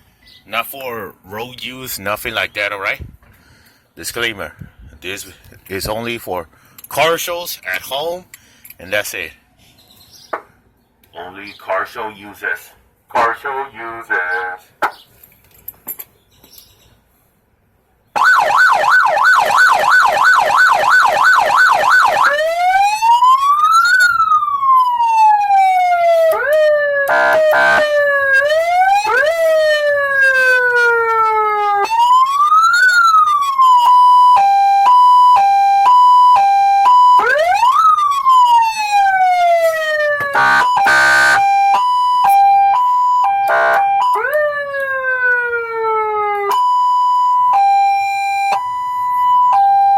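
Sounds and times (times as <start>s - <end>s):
electronic siren cycling tones: 18.2s - 49.9s.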